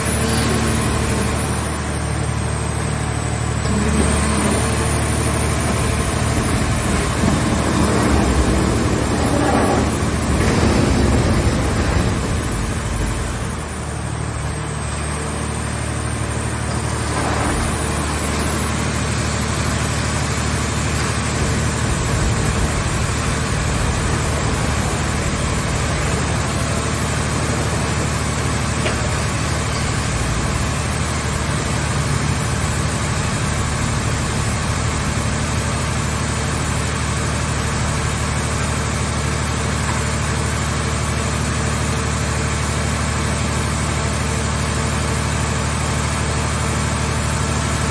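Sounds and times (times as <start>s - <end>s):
low engine-like hum: 0.0s - 47.9s.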